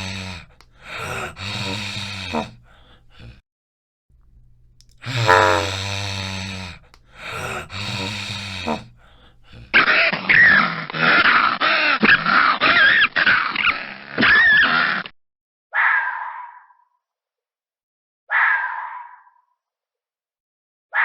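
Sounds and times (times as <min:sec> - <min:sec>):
fox low calls: 0:00.0 - 0:03.3, 0:05.0 - 0:09.8
fox chattering cries: 0:05.1 - 0:06.0.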